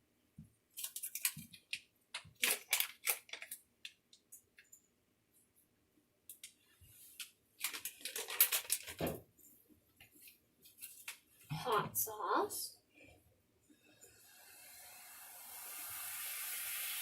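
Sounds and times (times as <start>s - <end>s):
rustling and scraping: 6.6s - 11.6s.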